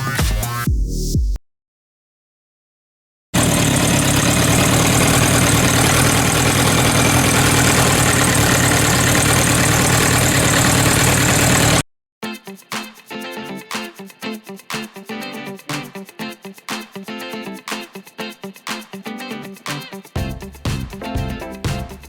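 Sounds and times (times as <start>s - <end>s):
engine idling with rattle: 3.4s - 11.8s.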